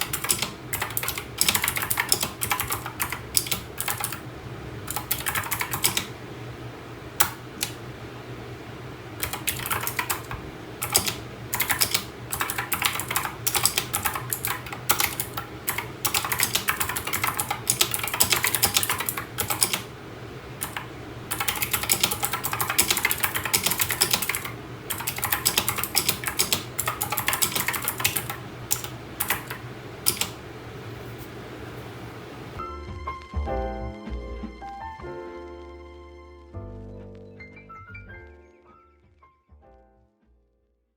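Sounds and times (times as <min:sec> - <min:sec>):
mechanical keyboard key clicks: 0:00.0 - 0:04.2, 0:09.2 - 0:19.8, 0:20.6 - 0:30.4.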